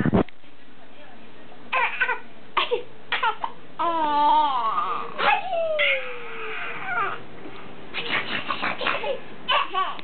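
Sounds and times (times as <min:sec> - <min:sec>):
baby crying: 0:03.2 - 0:07.3, 0:09.0 - 0:10.0.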